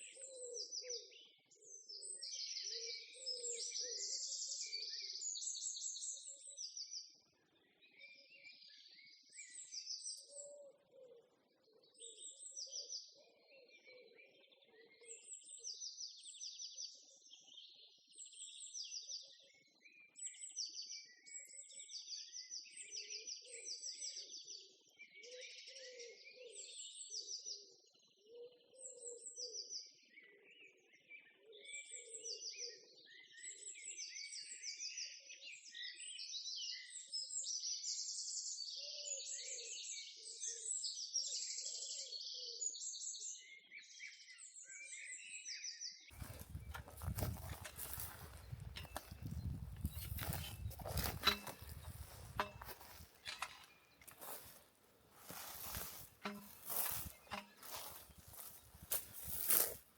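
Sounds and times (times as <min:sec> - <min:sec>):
birds trilling: 0:46.2 - 0:59.8
faint lower bird calls: 0:46.2 - 0:59.8.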